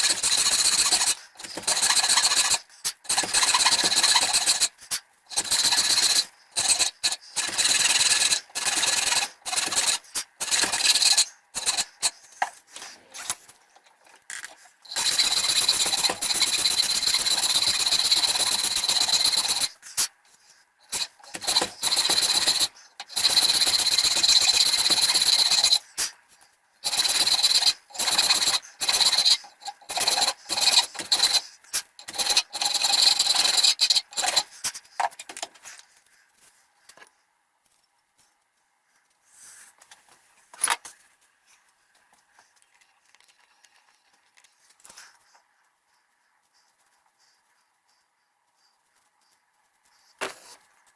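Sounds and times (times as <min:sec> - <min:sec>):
abrasive tool rasping wood: 0:00.0 - 0:12.2, 0:14.9 - 0:19.8, 0:20.9 - 0:25.8, 0:26.8 - 0:34.7.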